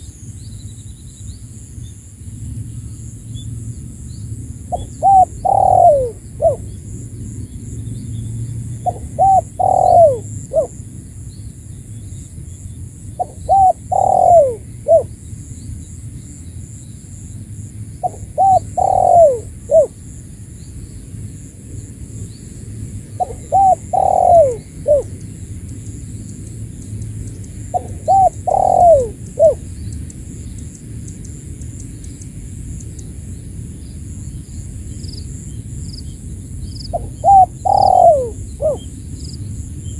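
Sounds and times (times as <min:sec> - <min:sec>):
dove cooing: 0:04.7 - 0:06.7, 0:08.8 - 0:10.8, 0:13.2 - 0:15.1, 0:18.0 - 0:20.0, 0:23.2 - 0:25.2, 0:27.7 - 0:29.7, 0:36.9 - 0:39.0.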